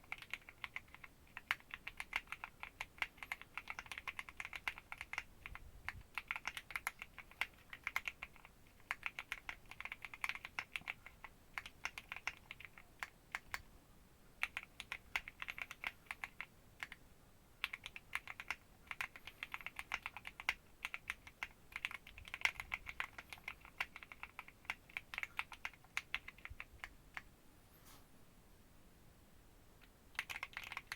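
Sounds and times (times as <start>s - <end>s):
mechanical keyboard typing: 0.0s - 13.6s, 14.4s - 17.0s, 17.6s - 27.2s, 30.1s - 30.9s.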